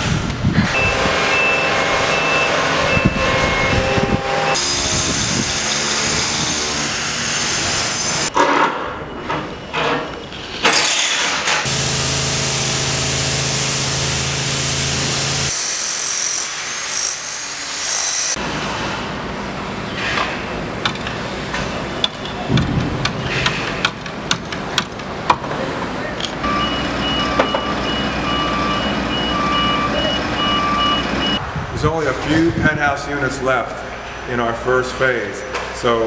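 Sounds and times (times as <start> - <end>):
heavy machinery engine running: 0.0 - 8.3, 11.2 - 15.5, 26.4 - 31.4
reversing alarm beeping: 0.6 - 10.6, 26.4 - 31.4
sharp knocks and bangs: 20.0 - 25.6.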